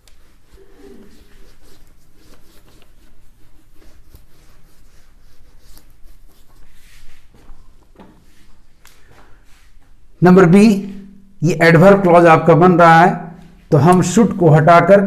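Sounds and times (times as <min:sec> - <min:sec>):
pen scratching on paper: 0:00.0 - 0:06.7.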